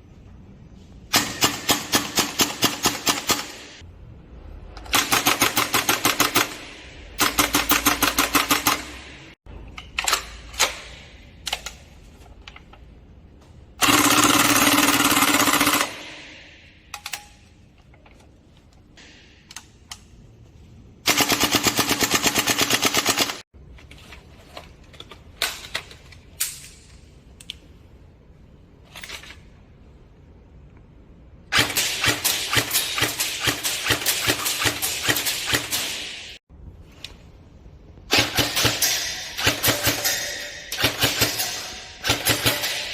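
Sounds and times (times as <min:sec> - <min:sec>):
airsoft gun automatic bursts: 0:13.8 - 0:16.2.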